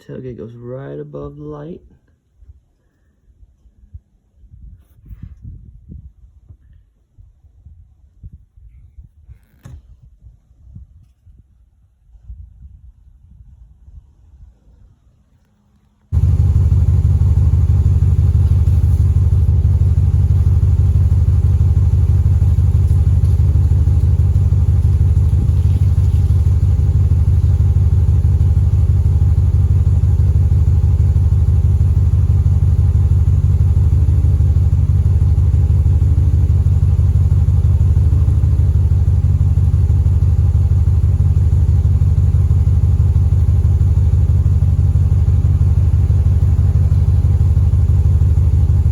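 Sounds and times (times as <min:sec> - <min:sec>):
truck engine idling: 0:16.2 - 0:48.9.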